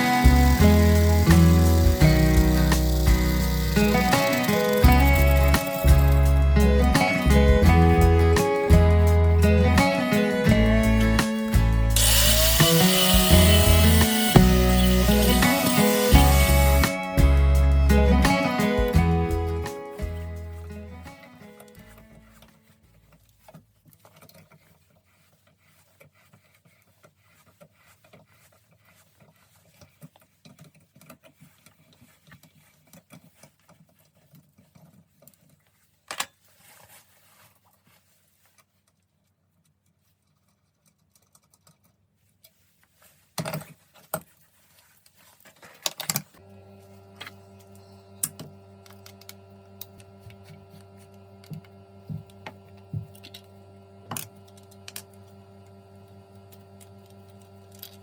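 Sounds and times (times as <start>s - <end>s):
small motor humming: 0.0s - 8.4s, 9.2s - 19.7s.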